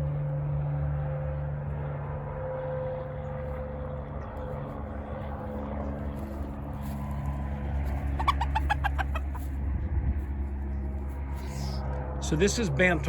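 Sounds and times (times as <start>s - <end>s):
low mechanical hum: 0.0s - 13.0s
chicken clucking: 8.0s - 9.5s.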